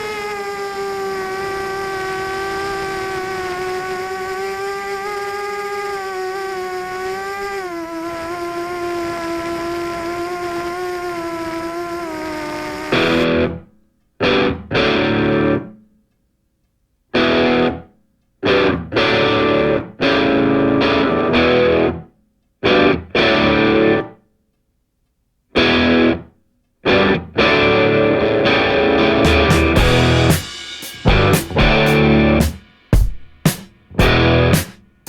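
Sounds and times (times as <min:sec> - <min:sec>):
pitched whine with wobble: 0:00.0 - 0:13.5, 0:27.6 - 0:32.6, 0:34.0 - 0:34.7
distorted electric guitar chords: 0:12.8 - 0:13.6, 0:14.2 - 0:15.7, 0:17.2 - 0:22.0, 0:22.6 - 0:24.2, 0:25.6 - 0:26.3, 0:26.9 - 0:34.8.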